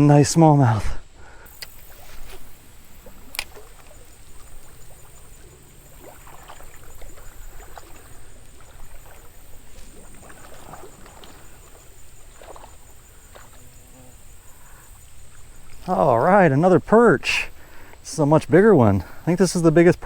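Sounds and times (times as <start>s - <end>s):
creek water trickling: 1.1s - 20.0s
sharp click: 3.3s - 3.6s.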